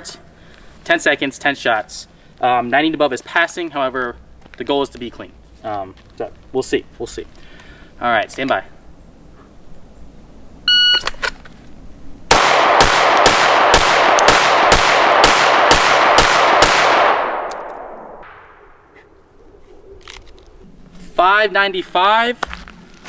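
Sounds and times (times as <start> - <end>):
shot timer beep: 10.7 - 11.1
rapid pistol shots: 12.3 - 18.5.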